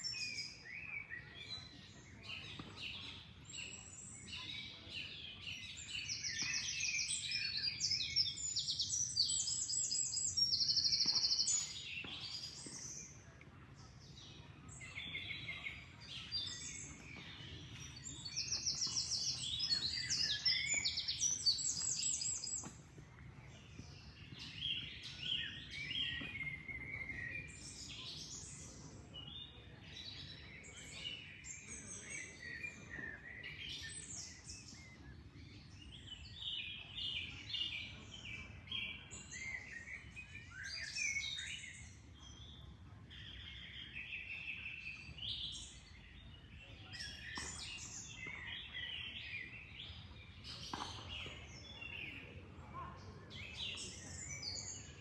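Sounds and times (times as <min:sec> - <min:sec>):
birds chirping and singing: 0:00.0 - 0:13.2, 0:14.2 - 0:52.4.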